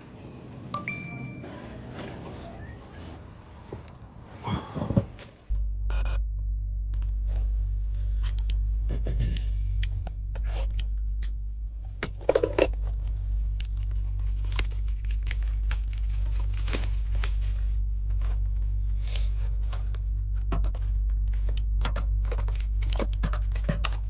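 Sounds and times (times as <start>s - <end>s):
steady low hum: 0.0s - 24.0s
plastic wrap crinkling: 13.0s - 17.7s.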